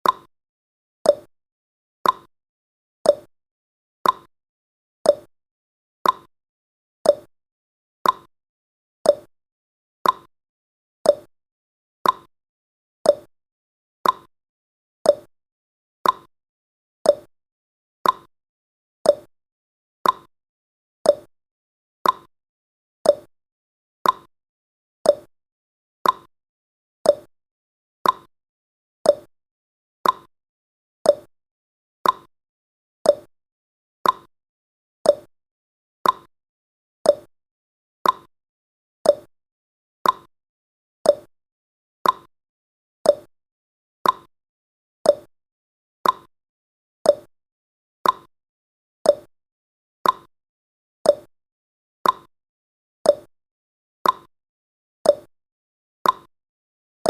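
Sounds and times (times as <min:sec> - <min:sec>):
clock ticking: 0:34.0 - 0:34.3, 0:36.0 - 0:36.3, 0:40.0 - 0:40.3, 0:42.0 - 0:42.3, 0:46.0 - 0:46.3.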